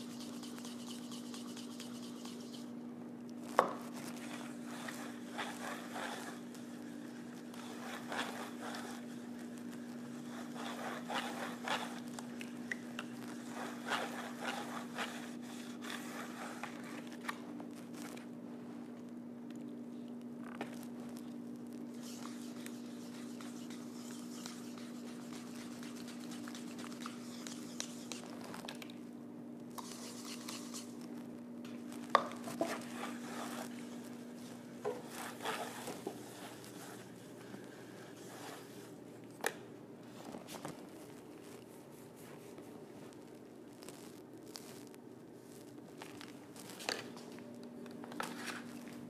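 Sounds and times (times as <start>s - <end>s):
paintbrush brushing and scraping: 0.0s - 2.8s, 3.4s - 17.2s, 21.9s - 28.7s, 29.7s - 31.2s, 31.8s - 39.0s
steady low hum: 0.0s - 49.0s.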